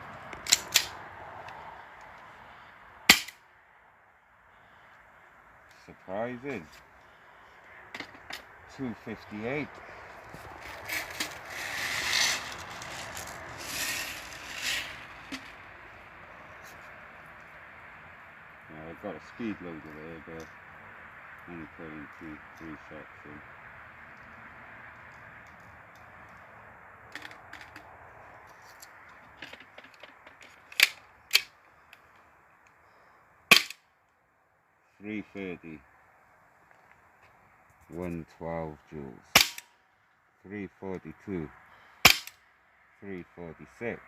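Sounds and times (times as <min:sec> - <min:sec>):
pistol clicking while loaded: 0:00.4 - 0:00.9, 0:33.5 - 0:33.8, 0:42.0 - 0:42.4
airsoft pistol shots: 0:03.1 - 0:03.4, 0:33.5 - 0:33.8, 0:39.4 - 0:39.7, 0:42.1 - 0:42.3
pistol magazine scraping and rubbing: 0:10.6 - 0:15.6.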